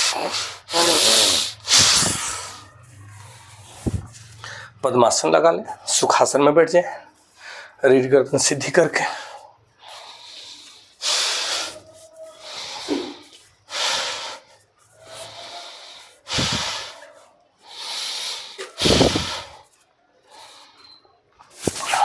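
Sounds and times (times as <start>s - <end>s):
man breathing deeply: 0.0s - 4.8s, 9.1s - 11.8s, 12.4s - 21.0s
breath rumble on microphone: 1.0s - 4.5s, 16.3s - 16.9s, 18.8s - 19.6s.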